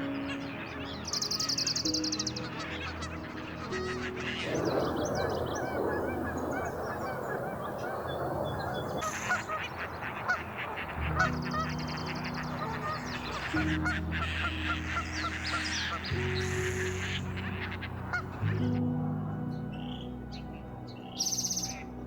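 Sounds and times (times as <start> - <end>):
fast high bird trill: 0.0 - 10.5
marsh birds calling: 0.0 - 22.0
soft background music: 0.0 - 22.0.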